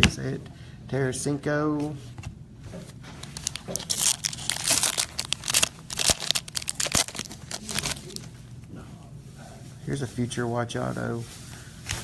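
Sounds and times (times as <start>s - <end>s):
wrapper tearing and crinkling: 3.2s - 8.3s.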